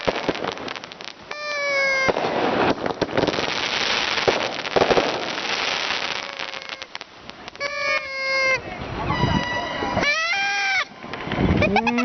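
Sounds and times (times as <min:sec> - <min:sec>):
fireworks crackling and popping: 0:00.0 - 0:12.0.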